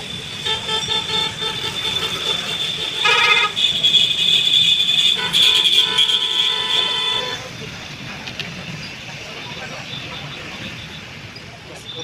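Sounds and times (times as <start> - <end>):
vehicle horn: 0.0 - 7.5
street noise: 0.0 - 12.0.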